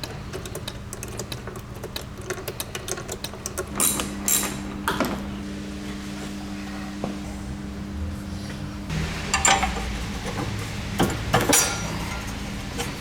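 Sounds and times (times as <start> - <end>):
steady low hum: 2.7 - 13.0.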